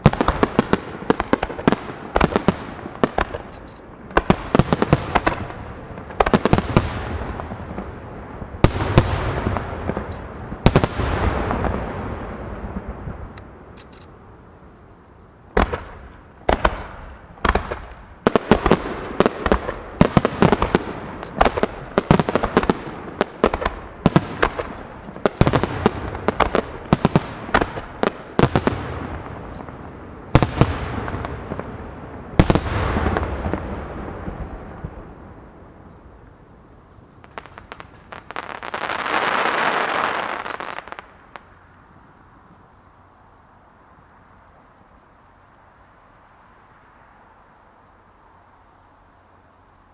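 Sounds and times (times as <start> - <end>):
fireworks bursting with bangs: 0.0 - 13.8, 15.5 - 35.3, 37.2 - 41.6
rumble of fireworks: 0.0 - 46.5.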